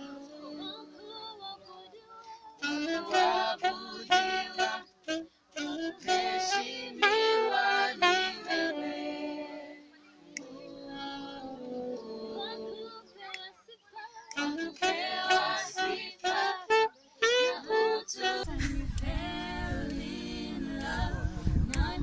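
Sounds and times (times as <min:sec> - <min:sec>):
song with singing voice: 0:00.0 - 0:16.8, 0:17.4 - 0:22.0.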